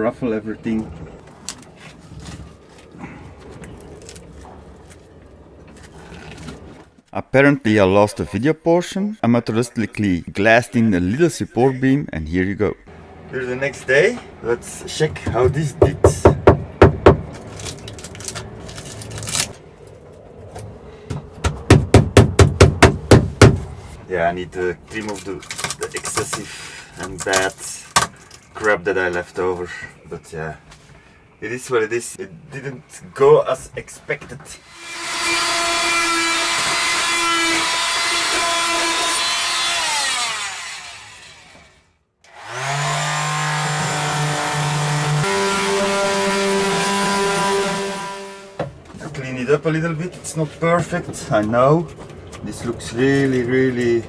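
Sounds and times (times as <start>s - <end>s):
sharp knocks on fibreglass: 15.2s - 17.3s, 21.1s - 23.7s
power tool cutting fibreglass: 34.6s - 48.6s.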